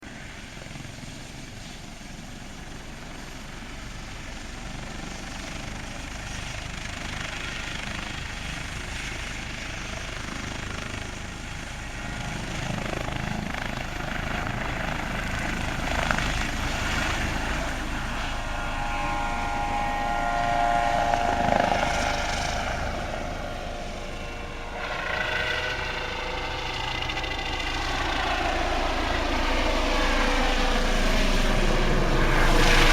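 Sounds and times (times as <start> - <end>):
helicopter engine and rotor: 0.0 - 32.9
rising whine: 11.5 - 32.9.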